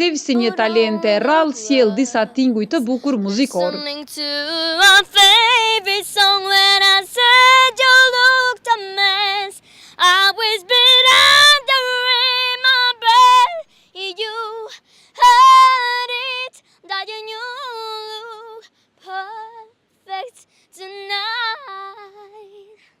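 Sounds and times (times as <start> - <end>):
girl singing solo: 0.3 - 16.5.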